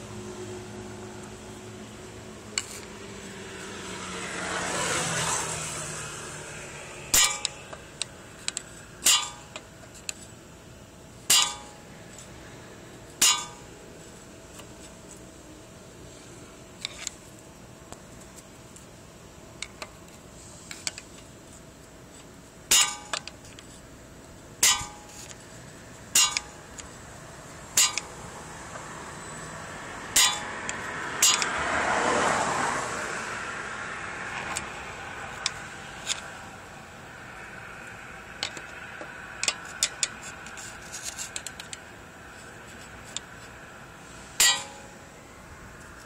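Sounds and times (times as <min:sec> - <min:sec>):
sharp metallic clinks from wheel: 0:07.1 - 0:07.8, 0:08.4 - 0:10.2, 0:13.2 - 0:13.7, 0:26.1 - 0:26.9, 0:27.7 - 0:28.2, 0:30.1 - 0:31.6, 0:44.3 - 0:45.0.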